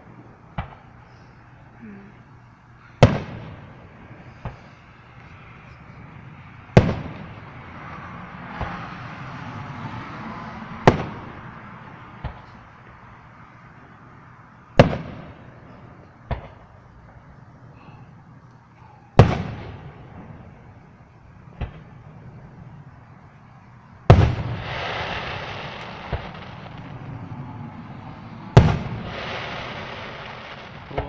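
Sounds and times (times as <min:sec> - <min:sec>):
fireworks bangs: 0:00.0 - 0:00.9, 0:03.0 - 0:05.2, 0:06.6 - 0:07.6, 0:08.4 - 0:09.0, 0:10.8 - 0:12.6, 0:14.8 - 0:15.6, 0:16.2 - 0:17.2, 0:19.2 - 0:20.8, 0:21.4 - 0:22.2, 0:24.0 - 0:31.0
faint firework pops: 0:00.6 - 0:00.9, 0:12.2 - 0:12.6, 0:16.3 - 0:16.7, 0:21.6 - 0:21.9, 0:24.1 - 0:26.9.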